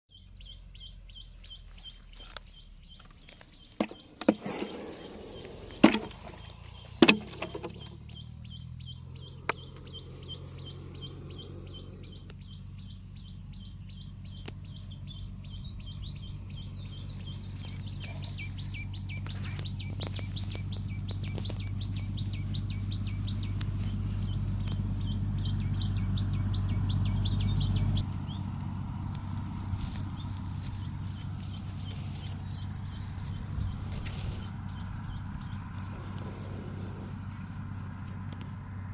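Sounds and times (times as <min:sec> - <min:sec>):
low steady hum: 0:00.1 - 0:38.9.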